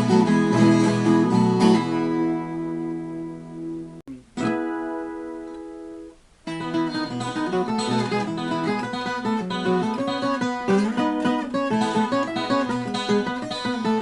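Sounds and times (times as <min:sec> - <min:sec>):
acoustic guitar playing: 0:00.0 - 0:14.0.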